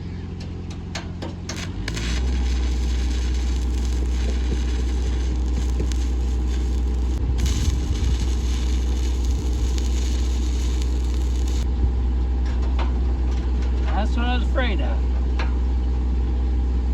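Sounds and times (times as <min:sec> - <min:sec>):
engine hum: 0:00.0 - 0:13.8
faint welding crackle: 0:01.5 - 0:11.7
welding arc clicks: 0:01.5 - 0:11.7.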